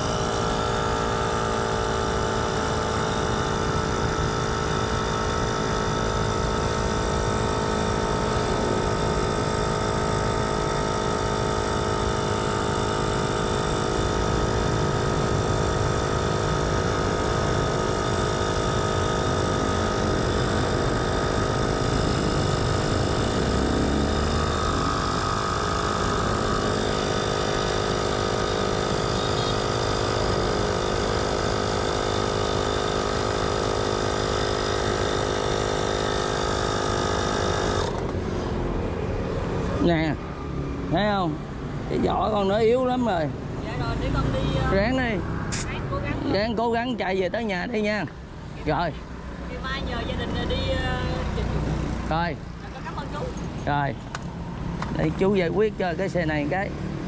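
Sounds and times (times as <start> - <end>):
motor humming: 0.0 - 39.9.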